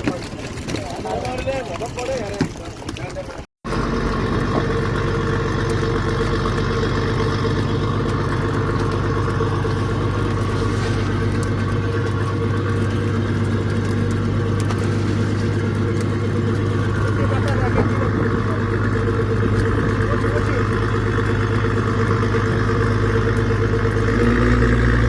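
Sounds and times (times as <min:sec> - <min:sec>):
boat engine droning: 0:00.2 - 0:25.0.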